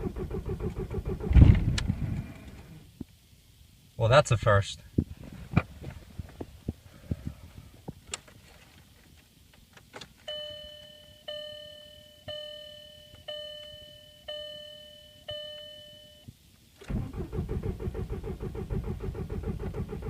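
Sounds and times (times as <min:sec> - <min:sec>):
dashboard warning chime dinging: 0:10.3 - 0:16.3.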